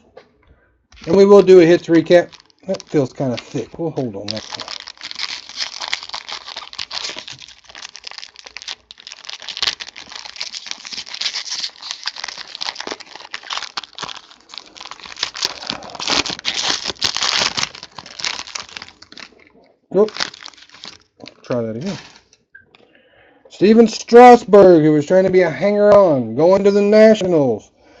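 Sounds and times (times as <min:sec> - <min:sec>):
plastic wrapping crinkling and tearing: 0:01.0 - 0:22.4.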